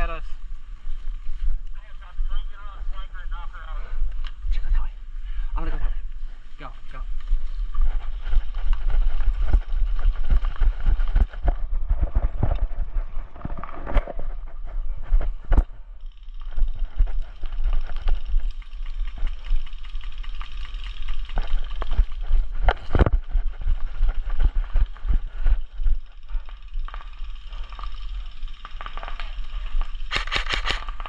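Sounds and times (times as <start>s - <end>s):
gear jostling against camera: 5.6s - 31.0s
running footsteps: 5.6s - 31.0s
sharp clicks: 29.9s - 31.0s.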